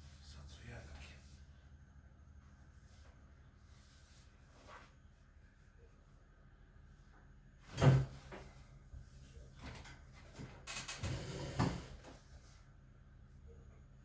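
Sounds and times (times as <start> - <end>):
rustling on padded table: 2.8 - 5.2.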